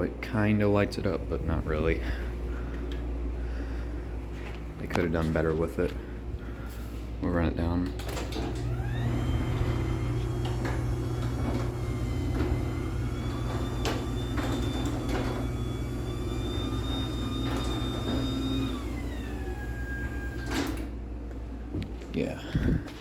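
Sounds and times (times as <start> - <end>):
garage door opener motor whine: 7.9 - 21.2.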